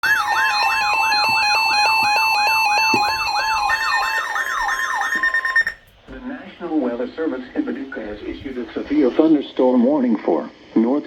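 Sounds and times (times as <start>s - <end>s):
sweeping siren alert tone: 0.0s - 5.9s.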